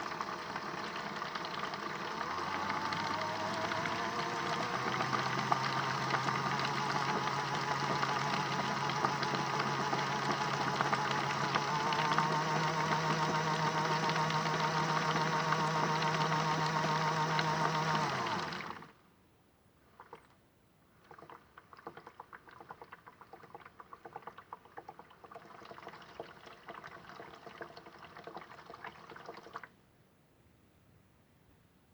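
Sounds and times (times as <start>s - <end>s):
toy washing machine motor whirring: 0.0s - 18.9s, 24.8s - 29.7s.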